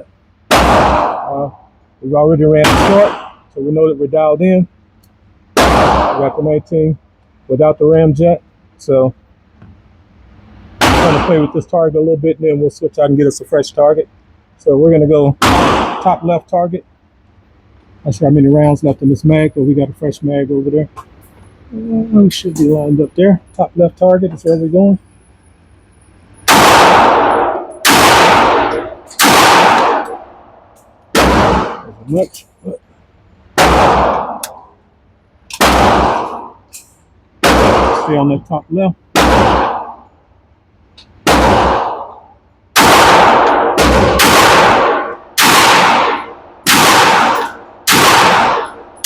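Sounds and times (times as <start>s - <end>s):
pistol shots echoing: 0.5s - 1.6s, 2.5s - 3.4s, 5.6s - 6.4s, 10.8s - 11.6s, 15.4s - 16.2s, 26.5s - 31.9s, 33.6s - 34.7s, 35.6s - 36.6s, 37.4s - 38.3s, 39.1s - 40.0s, 41.2s - 42.2s, 42.8s - 49.0s.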